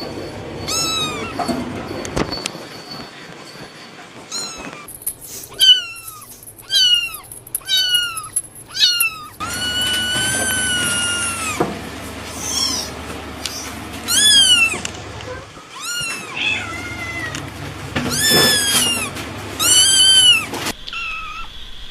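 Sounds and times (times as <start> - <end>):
kittens meowing: 0.7 - 1.4, 4.3 - 4.9, 5.5 - 11.6, 12.3 - 14.8, 15.5 - 17.5, 18.1 - 21.5.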